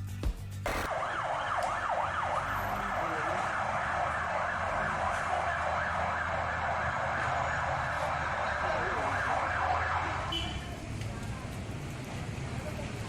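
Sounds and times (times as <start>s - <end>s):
siren sounding: 0.7s - 10.8s.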